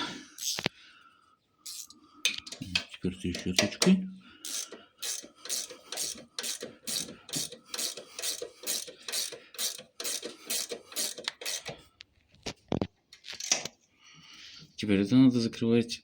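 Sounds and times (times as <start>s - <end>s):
hand brush scrubbing metal parts: 4.5s - 11.7s.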